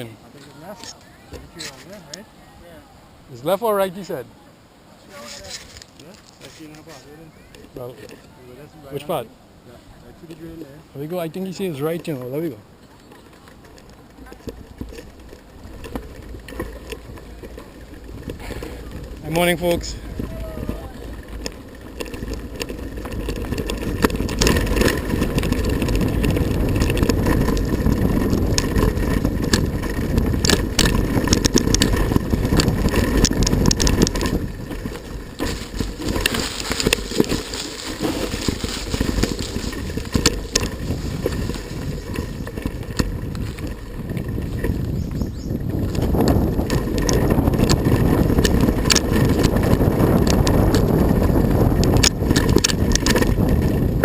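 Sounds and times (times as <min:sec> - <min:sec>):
bike rattles and clicks: 0:00.0 - 0:02.2, 0:05.1 - 0:09.3, 0:10.0 - 0:54.0
wind buffeting microphone: 0:06.6 - 0:54.0
tyre rumble on dirt: 0:13.1 - 0:54.0.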